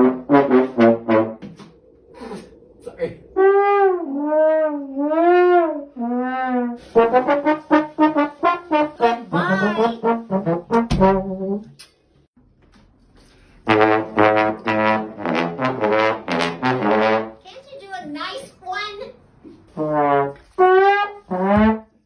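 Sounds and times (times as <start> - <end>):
brass instrument comic notes: 0.0 - 1.6, 3.4 - 11.7, 13.6 - 17.4, 19.7 - 22.0.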